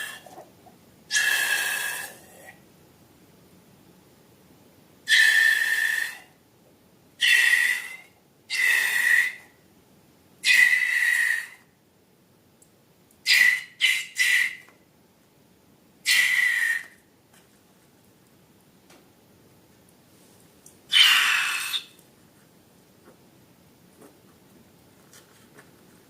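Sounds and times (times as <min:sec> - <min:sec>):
air squealing out of balloon: 0:01.1 - 0:02.3, 0:07.2 - 0:09.4, 0:13.3 - 0:14.7, 0:16.1 - 0:17.0, 0:20.9 - 0:22.0.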